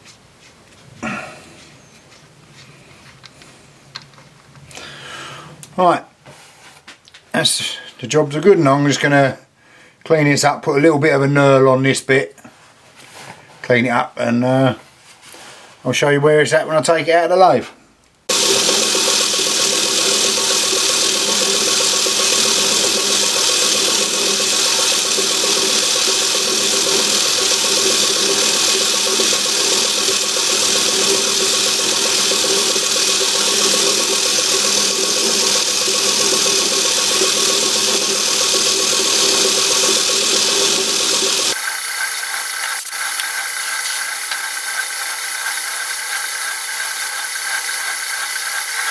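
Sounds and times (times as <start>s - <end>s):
metal lathe running: 18.3s - 48.9s.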